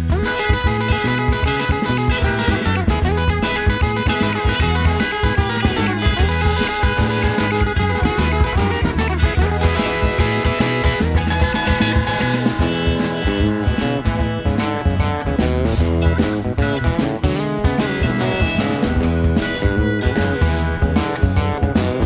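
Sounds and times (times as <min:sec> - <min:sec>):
lead guitar: 0:00.0 - 0:22.0
live band playing: 0:00.0 - 0:22.0.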